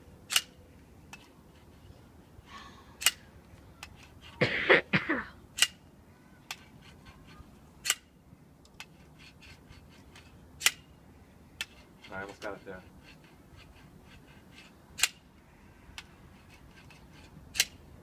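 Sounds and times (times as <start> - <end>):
person coughing: 4.4 - 5.4.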